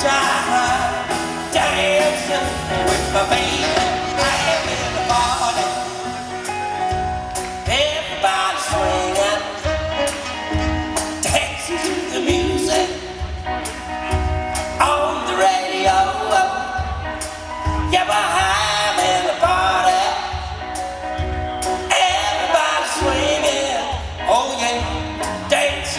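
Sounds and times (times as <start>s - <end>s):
band playing with singer: 0.0s - 25.9s.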